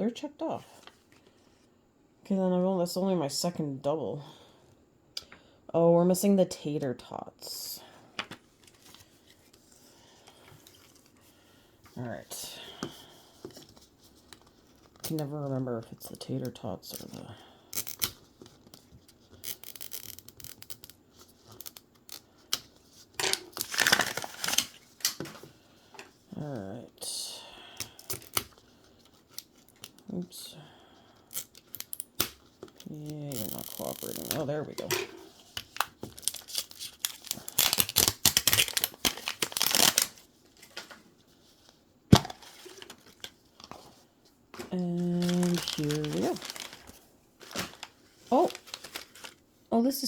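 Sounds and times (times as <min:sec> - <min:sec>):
plastic wrapper crinkling and tearing: 0:17.8 - 0:22.3, 0:23.1 - 0:25.2, 0:31.4 - 0:34.5, 0:35.4 - 0:41.0, 0:44.6 - 0:49.4.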